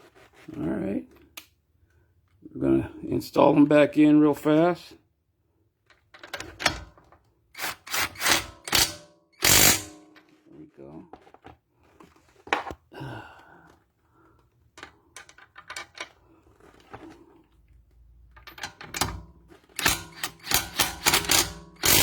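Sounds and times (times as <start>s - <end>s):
impact wrench hammering: 7.6s - 10.2s, 19.8s - 22.0s.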